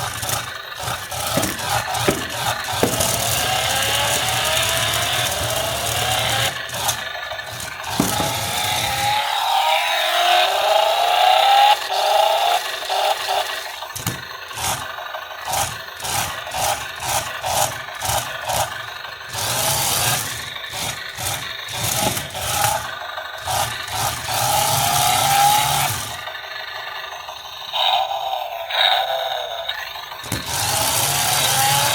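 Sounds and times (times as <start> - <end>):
objects scraping and rattling: 0.0 - 9.2, 13.9 - 14.9, 21.2 - 23.8, 30.2 - 31.9.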